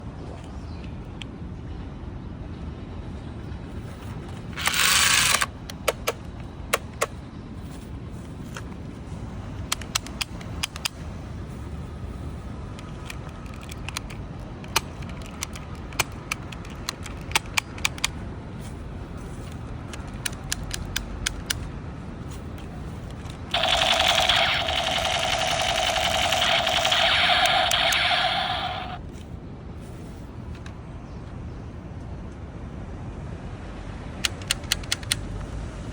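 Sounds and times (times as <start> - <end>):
toy blaster clicks and snaps: 4.6 - 7.1, 9.7 - 11.0, 12.8 - 18.1, 23.3 - 29.0, 34.2 - 35.2.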